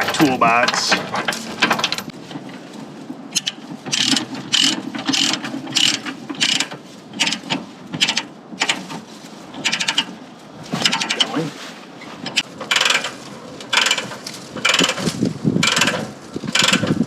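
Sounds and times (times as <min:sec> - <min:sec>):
ratchet pawl clicking: 0:03.4 - 0:07.4, 0:12.7 - 0:13.1, 0:13.7 - 0:16.9.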